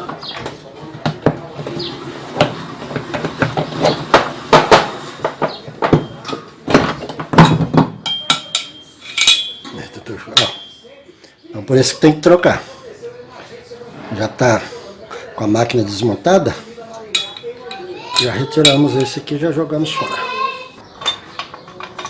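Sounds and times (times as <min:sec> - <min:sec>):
metallic clinks of wrenches and parts: 0:05.2 - 0:11.0, 0:16.9 - 0:22.0.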